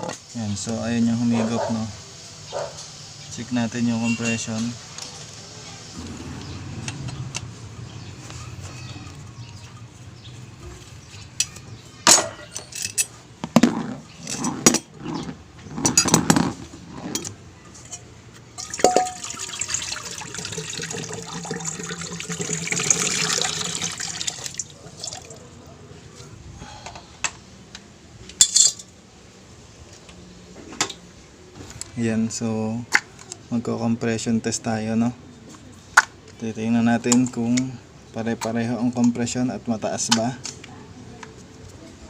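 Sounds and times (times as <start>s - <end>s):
metal tools clinking and knocking: 11.4s - 13.2s, 17.1s - 19.4s, 28.4s - 29.0s.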